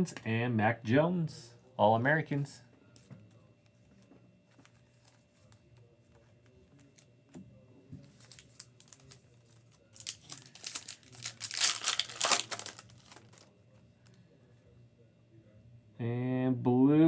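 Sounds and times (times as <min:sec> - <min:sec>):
foil wrapper tearing and crinkling: 0:08.2 - 0:13.5.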